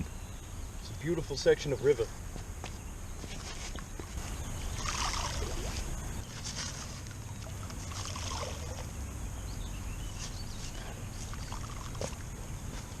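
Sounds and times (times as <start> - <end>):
wind: 0.0 - 13.0
moving water: 4.3 - 9.3, 11.2 - 12.6.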